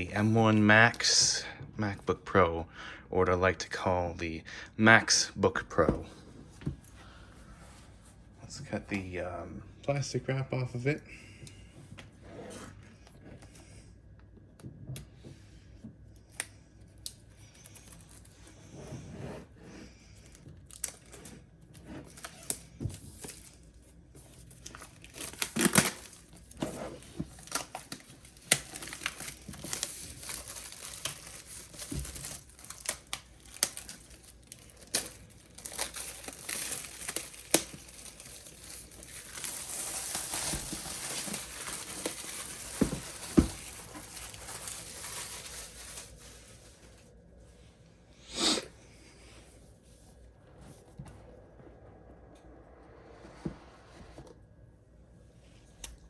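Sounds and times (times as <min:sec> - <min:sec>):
plastic wrap crinkling and tearing: 0:16.4 - 0:18.4, 0:20.3 - 0:47.0.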